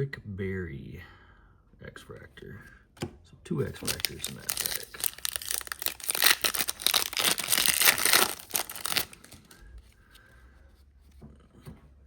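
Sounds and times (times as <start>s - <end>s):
faint handling sounds: 3.6s - 12.0s
foil wrapper tearing and crinkling: 3.7s - 9.6s.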